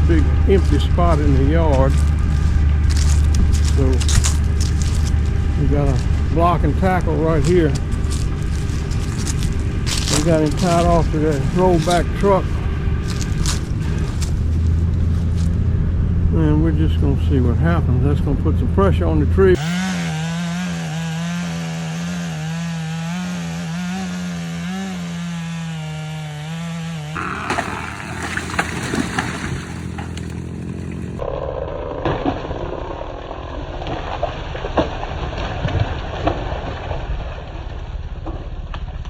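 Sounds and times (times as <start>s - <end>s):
chainsaw cutting tree trunk: 0.0s - 15.5s, 19.5s - 31.2s.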